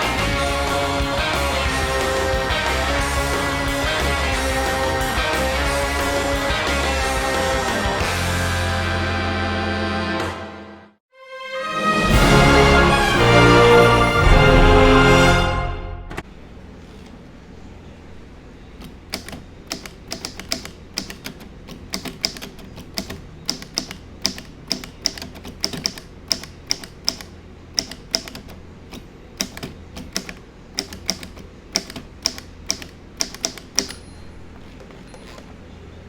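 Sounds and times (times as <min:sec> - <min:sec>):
manual typewriter key strikes: 0:18.8 - 0:34.4.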